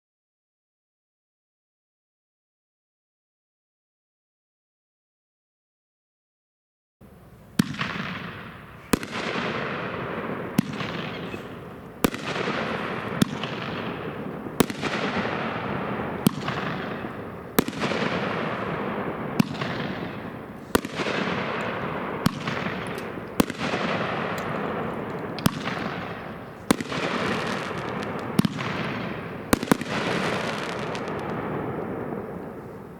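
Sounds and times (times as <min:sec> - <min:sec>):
firework cake bangs: 0:07.6 - 0:32.9.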